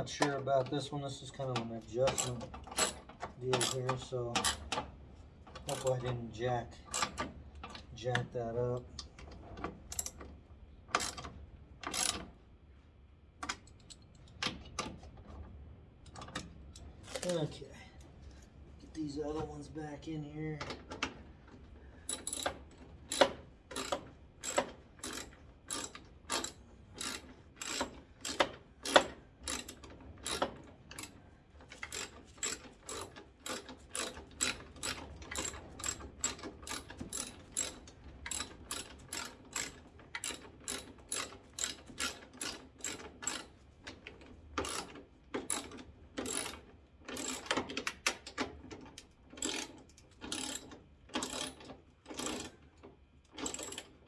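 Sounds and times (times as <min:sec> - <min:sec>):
hand ratchet clicking: 0:02.1 - 0:04.8, 0:05.7 - 0:06.1, 0:06.9 - 0:07.3, 0:22.1 - 0:31.2, 0:31.8 - 0:43.5, 0:45.5 - 0:48.0, 0:49.4 - 0:51.6, 0:52.2 - 0:52.5, 0:53.4 - 0:53.9.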